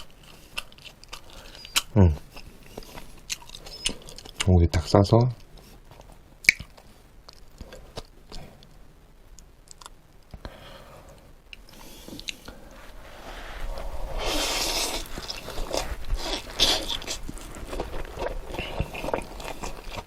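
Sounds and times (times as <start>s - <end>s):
close chewing: 0.0s - 4.6s, 14.2s - 20.0s
wet mouth clicks: 6.4s - 6.7s
crunchy biting: 13.9s - 20.0s.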